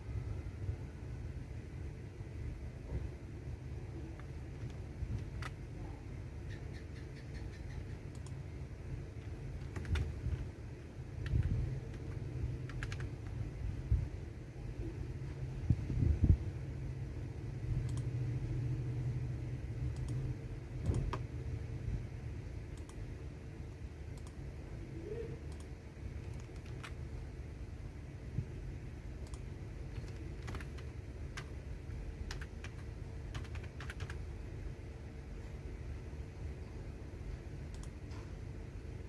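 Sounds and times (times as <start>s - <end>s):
keyboard keys clicking: 4.1s - 5.7s, 9.2s - 10.5s, 11.2s - 13.4s, 19.9s - 21.3s, 25.5s - 27.0s, 29.2s - 34.3s.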